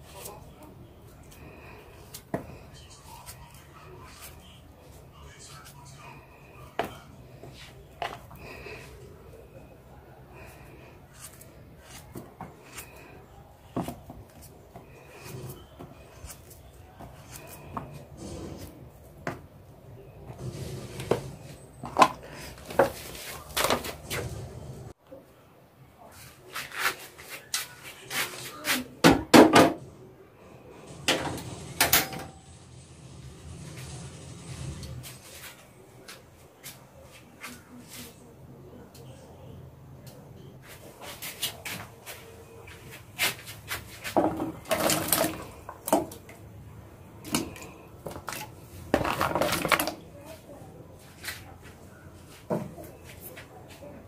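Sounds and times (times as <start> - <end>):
kitchenware knocks and clatters: 29.0 - 29.8, 44.1 - 46.2.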